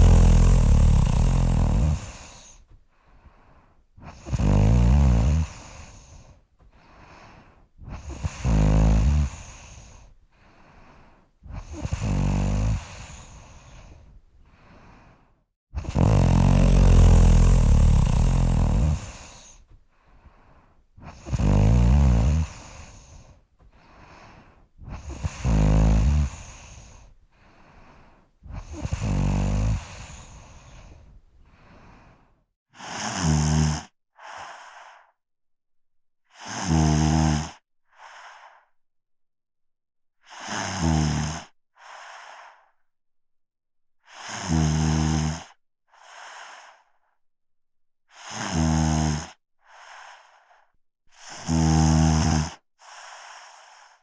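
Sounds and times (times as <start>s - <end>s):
person snoring: 0.0s - 2.6s, 4.0s - 6.3s, 7.8s - 10.1s, 11.5s - 14.0s, 15.8s - 19.6s, 21.0s - 23.3s, 24.8s - 27.1s, 28.5s - 31.0s, 32.8s - 35.1s, 36.3s - 38.5s, 40.3s - 42.6s, 44.1s - 46.5s, 48.2s - 50.2s, 51.2s - 54.0s
soft breathing: 0.0s - 4.3s, 5.4s - 8.4s, 9.0s - 21.4s, 22.3s - 32.4s, 41.8s - 42.8s, 46.0s - 47.2s, 49.7s - 51.5s, 52.8s - 54.0s.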